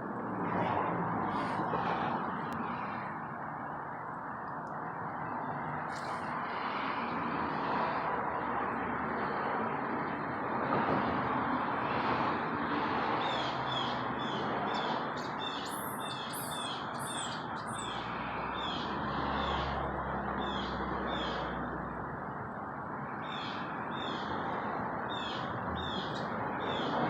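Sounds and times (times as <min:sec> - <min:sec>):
outdoor background noise: 0:00.0 - 0:27.0
short chirping calls: 0:15.5 - 0:17.9.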